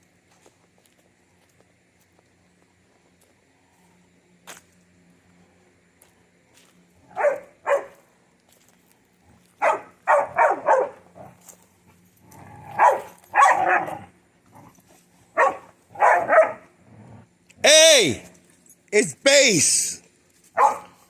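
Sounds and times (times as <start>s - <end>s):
dog barking: 7.1s - 8.0s, 9.6s - 11.0s, 12.8s - 14.0s, 15.4s - 16.7s, 20.6s - 21.0s.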